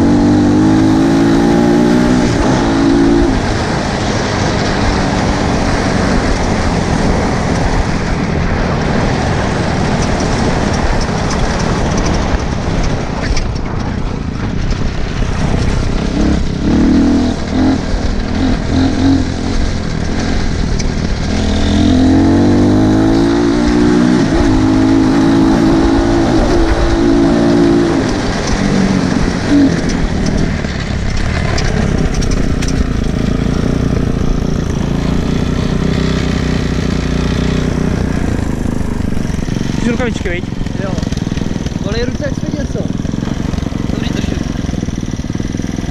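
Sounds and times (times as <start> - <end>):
dirt bike engine revving: 0.0 - 45.9.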